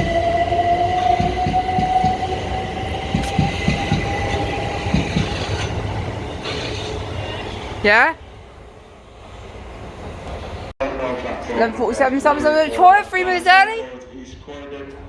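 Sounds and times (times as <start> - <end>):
electric train motors whining: 0.0 - 7.6
wheels clattering over rail joints: 3.0 - 7.7.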